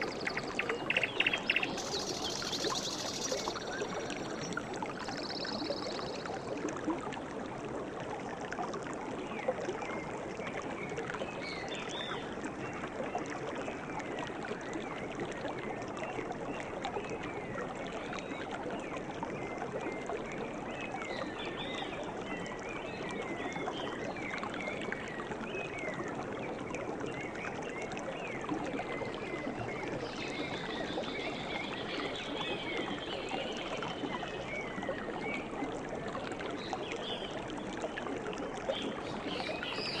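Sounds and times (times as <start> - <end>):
small birds chirping: 0.0 - 6.4
stream running: 0.0 - 40.0.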